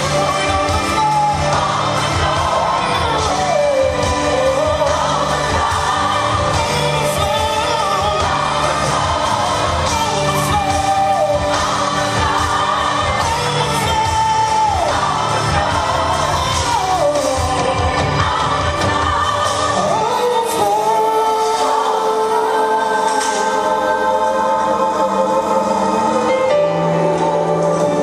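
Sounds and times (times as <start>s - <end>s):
band with steady beat: 0.0s - 21.9s
person singing pop worship song: 0.0s - 28.0s.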